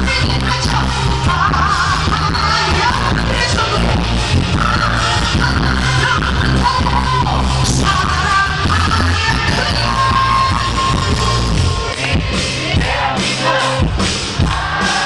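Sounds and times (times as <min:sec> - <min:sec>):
woman singing: 0:00.0 - 0:11.6
pop band accompaniment: 0:00.0 - 0:15.0.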